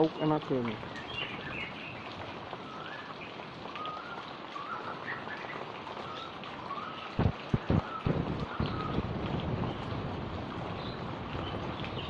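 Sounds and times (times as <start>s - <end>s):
birds chirping: 0.0s - 9.0s
steady rain: 0.0s - 12.0s
low thumps: 7.2s - 9.7s.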